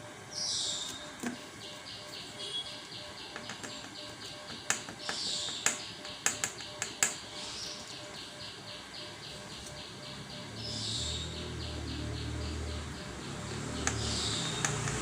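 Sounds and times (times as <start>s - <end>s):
fast chirping: 0.3s - 15.0s
sharp clicks and taps: 3.3s - 7.2s, 13.5s - 15.0s.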